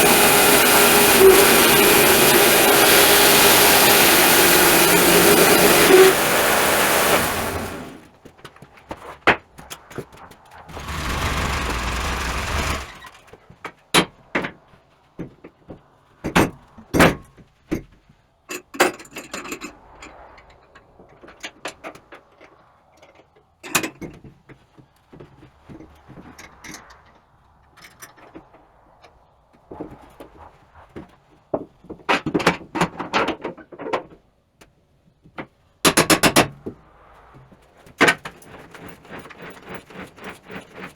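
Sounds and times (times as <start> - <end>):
loud machine noise: 0.0 - 8.0, 10.7 - 13.2.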